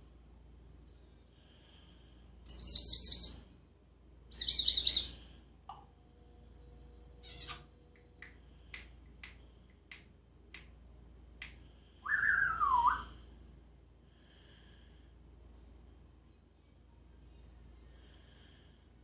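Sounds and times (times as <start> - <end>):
parrot whistle-like call: 12.0 - 13.1.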